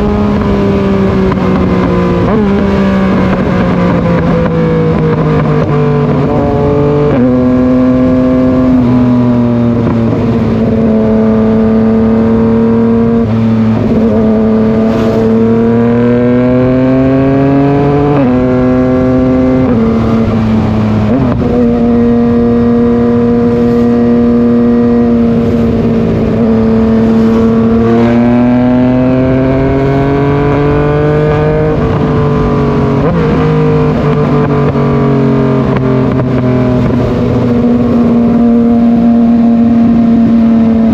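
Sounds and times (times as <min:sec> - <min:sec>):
motorcycle engine running under load: 0:00.0 - 0:40.9.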